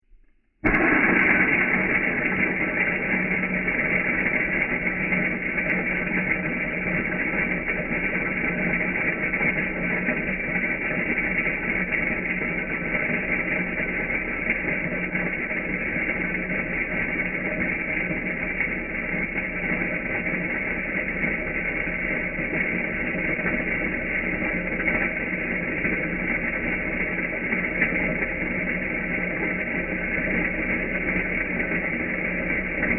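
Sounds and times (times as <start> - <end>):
coffee grinder grinding: 0.7 - 5.1
coffee grinder grinding beans: 0.7 - 18.8.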